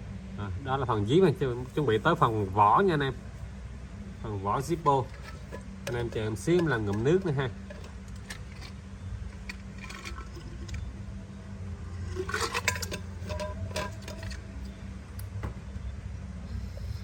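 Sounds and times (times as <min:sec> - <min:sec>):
steady low hum: 0:00.0 - 0:17.0
cup clinks and knocks: 0:12.1 - 0:14.4.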